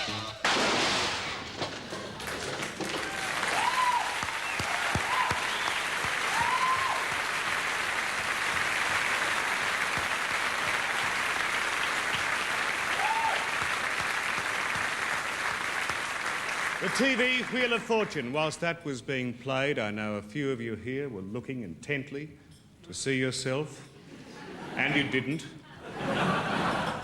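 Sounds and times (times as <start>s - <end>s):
audience applauding: 2.1s - 18.3s.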